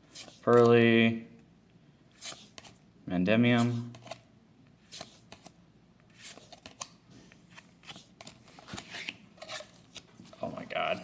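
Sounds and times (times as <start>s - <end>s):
cards flicking and swishing: 2.2s - 2.8s, 4.9s - 10.1s.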